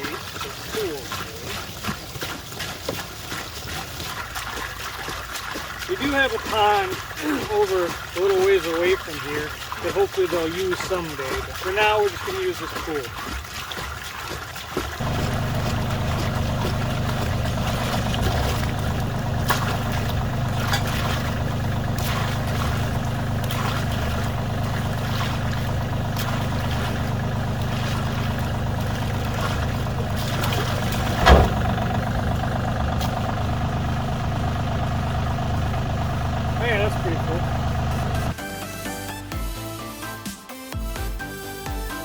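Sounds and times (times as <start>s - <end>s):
engine running steadily: 14.8s - 38.4s
louder knock: 31.1s - 31.8s.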